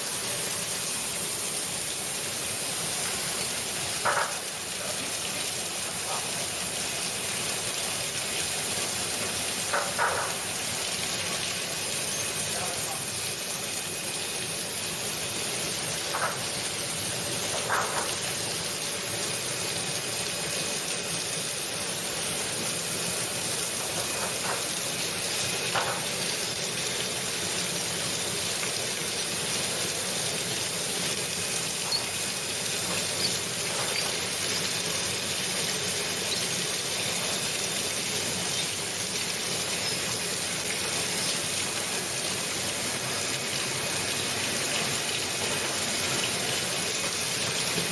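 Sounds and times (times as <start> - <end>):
washing machine churning water: 0.0 - 47.9.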